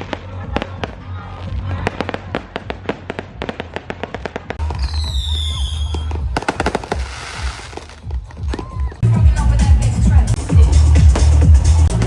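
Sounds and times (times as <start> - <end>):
firework bangs: 0.0 - 8.9
firework hissing crackle: 2.8 - 8.2
firework falling whistle: 4.7 - 7.8.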